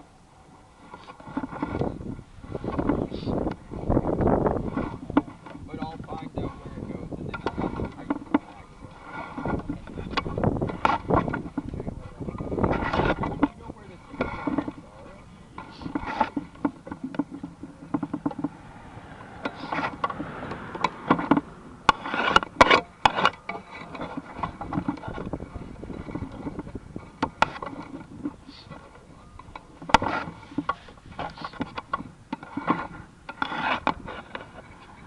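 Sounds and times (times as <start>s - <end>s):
scraping and rubbing: 0.8s - 35.0s.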